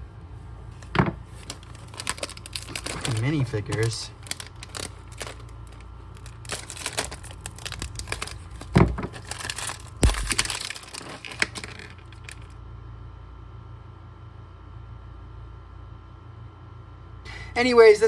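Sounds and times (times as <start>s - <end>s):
plastic packaging tearing and crinkling: 0.8s - 12.5s.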